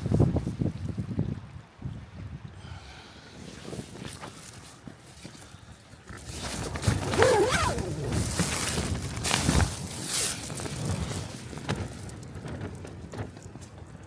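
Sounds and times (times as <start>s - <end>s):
wind gusts buffeting tent: 0.0s - 14.0s
tent fabric flapping: 6.0s - 14.0s.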